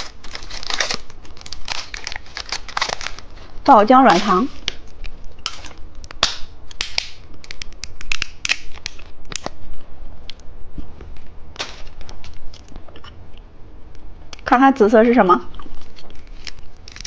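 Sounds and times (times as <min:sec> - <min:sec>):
candy clicking and crackling: 0:00.0 - 0:09.6, 0:15.6 - 0:17.0.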